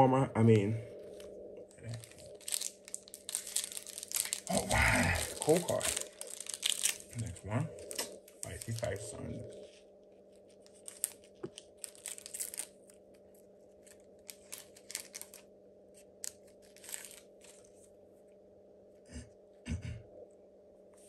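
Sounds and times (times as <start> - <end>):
foil wrapper crinkling and tearing: 1.8 - 9.6, 10.4 - 13.1, 13.8 - 15.5, 16.2 - 17.7.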